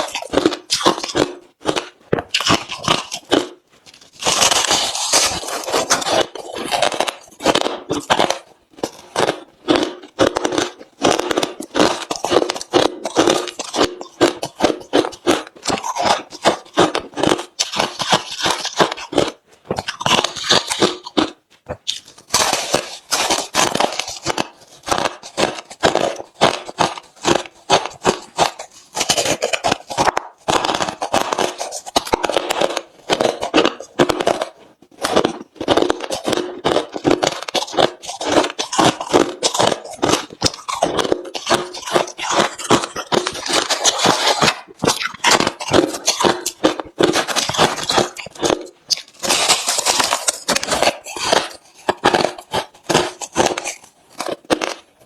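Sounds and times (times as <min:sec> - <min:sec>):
chewing crushed ice: 0:00.0 - 0:55.0.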